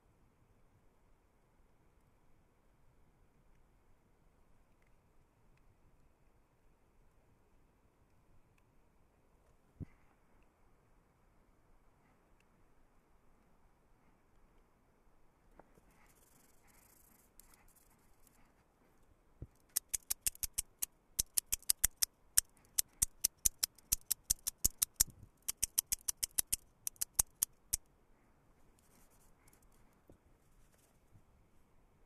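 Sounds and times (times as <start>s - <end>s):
sharp metallic knife clicks: 19.7s - 27.8s.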